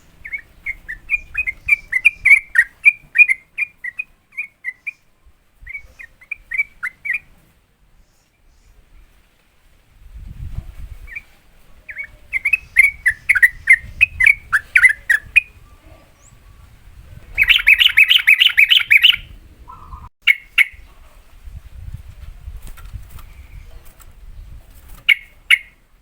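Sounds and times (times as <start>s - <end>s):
bulbul singing: 0.0s - 7.3s, 11.9s - 20.9s.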